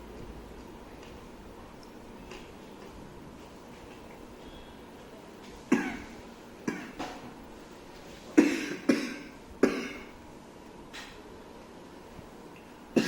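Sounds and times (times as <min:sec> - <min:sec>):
man coughing: 0:08.4 - 0:10.1.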